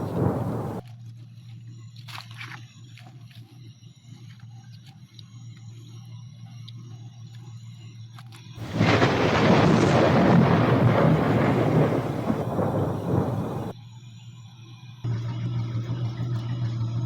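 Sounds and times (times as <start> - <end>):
loud rushing rumble: 0.0 - 0.8, 8.6 - 13.7.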